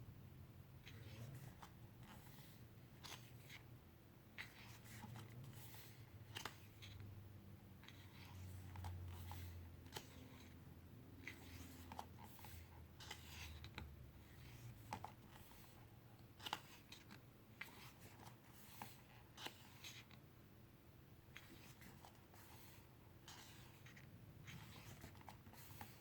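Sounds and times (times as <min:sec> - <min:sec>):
pages turning rustle: 0:04.4 - 0:07.1, 0:07.8 - 0:10.6, 0:11.2 - 0:15.8, 0:16.4 - 0:20.2, 0:21.3 - 0:26.0.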